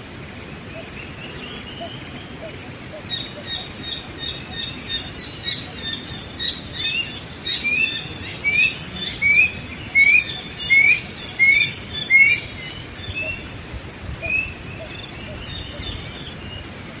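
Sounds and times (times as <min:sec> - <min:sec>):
insects buzzing: 0:00.0 - 0:17.0
higher bird chirps: 0:00.8 - 0:13.5.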